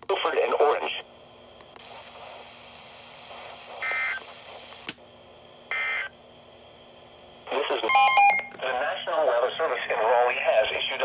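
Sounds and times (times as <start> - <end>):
buzzing alert data tones: 7.9 - 8.6.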